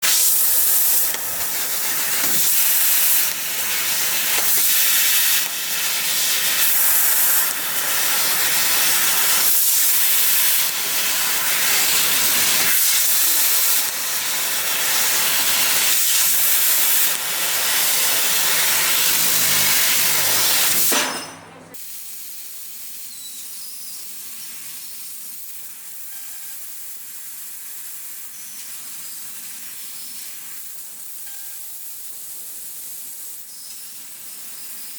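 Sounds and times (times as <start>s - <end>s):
loud hiss of assist gas: 0.0s - 21.0s, 21.8s - 23.1s.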